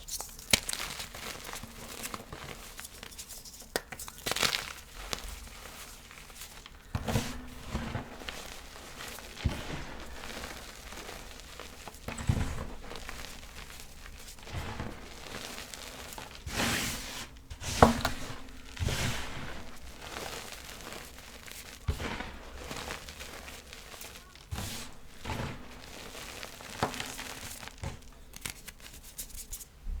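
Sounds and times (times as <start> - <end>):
chalk snapping: 0.0 - 1.3, 28.3 - 29.7
chalk crunching and crumbling: 0.0 - 29.7.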